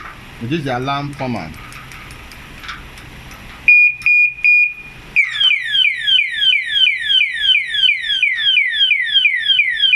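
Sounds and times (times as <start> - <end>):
electronic siren whooping: 3.7 - 9.9.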